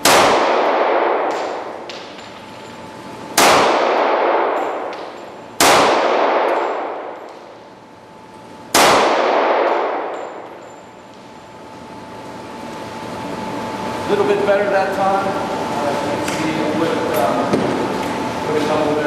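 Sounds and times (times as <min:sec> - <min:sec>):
pistol shots echoing: 0:00.0 - 0:02.3, 0:03.4 - 0:07.6, 0:08.7 - 0:10.7.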